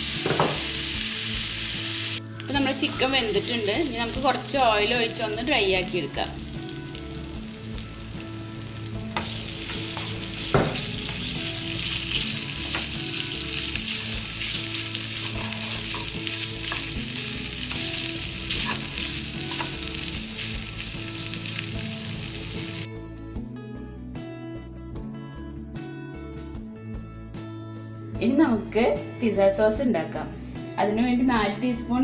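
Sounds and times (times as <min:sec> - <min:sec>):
chicken sizzling in oil: 0:00.0 - 0:22.9
background music: 0:00.0 - 0:32.0
knocks in a pan: 0:00.2 - 0:00.7, 0:10.5 - 0:10.9.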